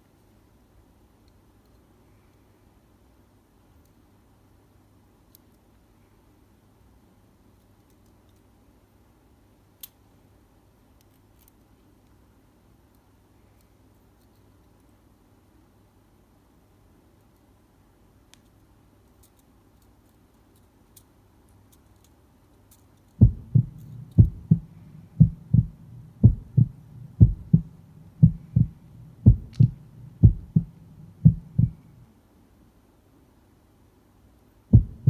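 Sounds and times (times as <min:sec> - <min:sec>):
heartbeat-like thumps: 0:23.2 - 0:32.0, 0:34.7 - 0:35.0
faint hum: 0:23.2 - 0:32.1, 0:34.7 - 0:35.0.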